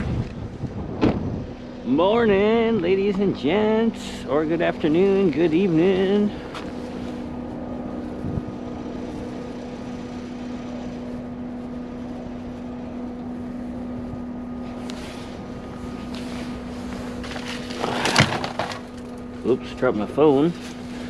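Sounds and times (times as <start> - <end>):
steady mechanical hum: 0.0 - 21.0
faint clicks and rustles: 6.4 - 19.5.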